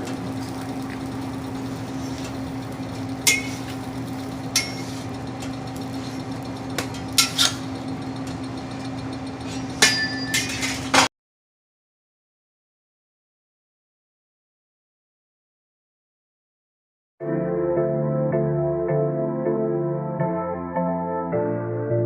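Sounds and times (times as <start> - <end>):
steady low hum: 0.0 - 11.0
sharp metallic clinks: 8.8 - 10.8.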